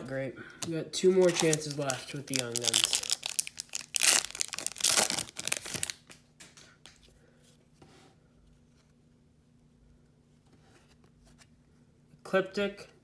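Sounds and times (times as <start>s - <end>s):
cards rustling: 0.6s - 6.2s
foil wrapper tearing and crinkling: 1.2s - 6.1s.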